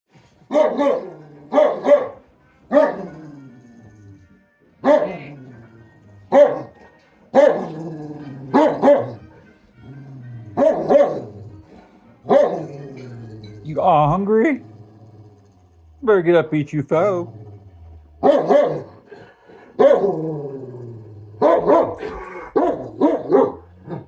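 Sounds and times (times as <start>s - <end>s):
dog barking: 0.5s - 3.1s, 4.8s - 5.3s, 6.3s - 7.8s, 8.5s - 9.3s, 10.6s - 11.3s, 12.3s - 12.7s, 18.2s - 18.9s, 19.8s - 20.2s, 21.4s - 24.0s
dog grumbling: 2.7s - 24.0s.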